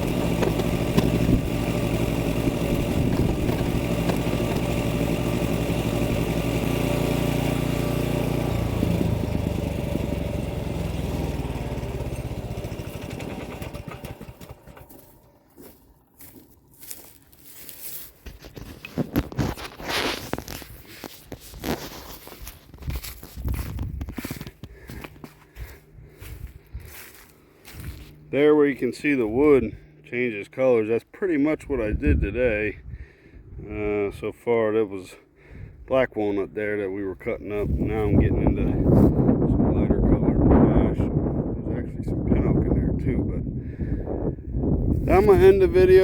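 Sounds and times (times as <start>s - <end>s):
small engine running: 0.0s - 32.1s, 45.0s - 46.0s.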